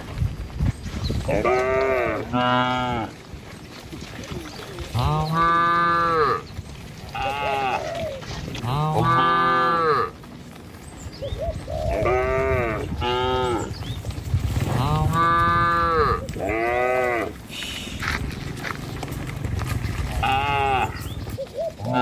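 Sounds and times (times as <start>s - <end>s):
cattle mooing: 1.3s - 3.2s, 4.9s - 6.5s, 7.1s - 10.2s, 11.9s - 13.7s, 14.7s - 17.5s, 18.3s - 21.2s.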